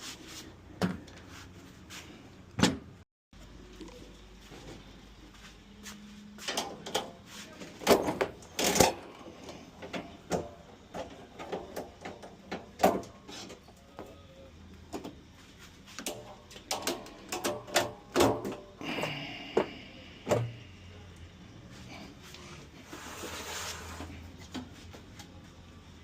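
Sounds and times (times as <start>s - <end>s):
knocks and clatters on metal parts: 16.0s - 18.8s.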